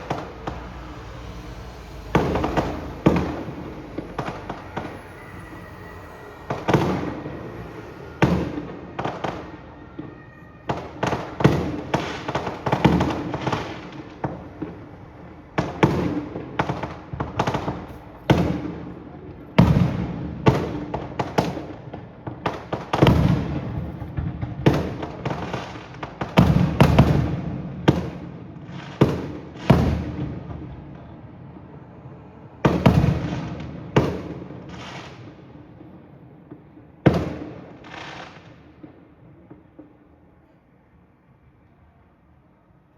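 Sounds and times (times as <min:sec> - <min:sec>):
echoing rumble: 0:00.0 - 0:20.5.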